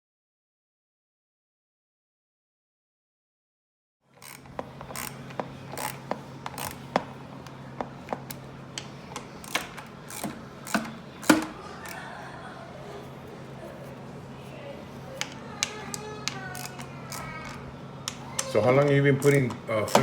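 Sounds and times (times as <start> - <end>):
steady low hum: 4.1 - 20.0
ratchet clicking: 4.2 - 7.0, 9.4 - 11.5, 16.5 - 17.4.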